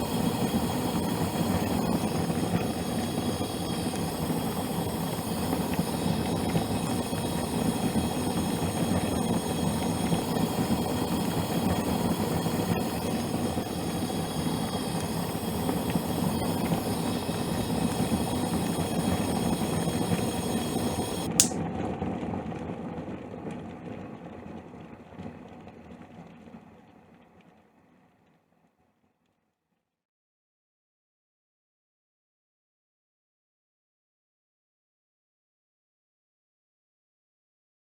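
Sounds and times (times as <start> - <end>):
gas flame hissing: 0.0 - 21.6
water bubbling at a boil: 0.0 - 21.6
burner knob click: 20.2 - 21.6.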